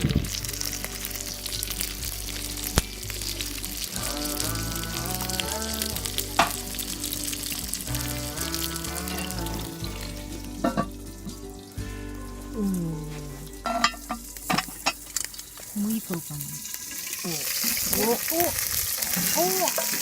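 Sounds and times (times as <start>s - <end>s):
background music with held notes: 0.0s - 15.8s
food sizzling in a pan: 0.0s - 20.0s.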